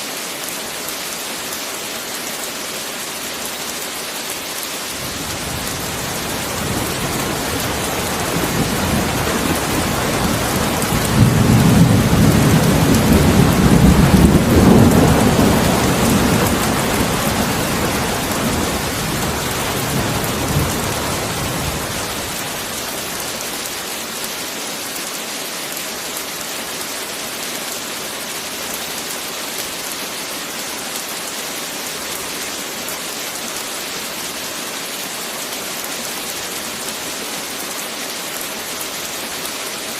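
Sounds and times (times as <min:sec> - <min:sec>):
heavy rain: 0:00.0 - 0:39.9
thunder rolling: 0:05.0 - 0:23.0.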